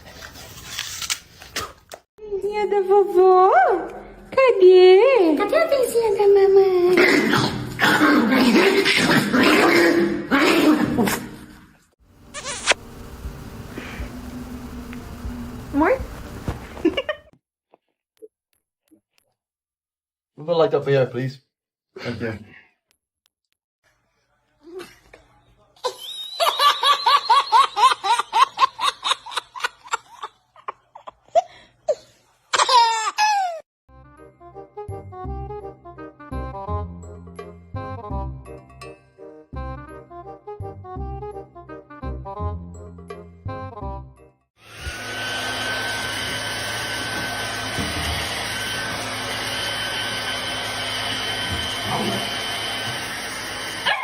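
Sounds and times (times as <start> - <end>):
thin high whine: 12.2 - 16.8
small motor whirring: 12.3 - 16.7
music: 33.9 - 44.5.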